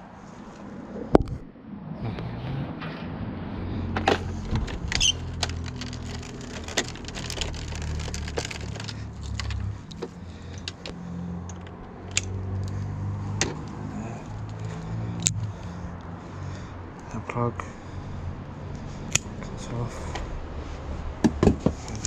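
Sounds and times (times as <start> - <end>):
rummaging through items by hand: 4.0 - 11.8.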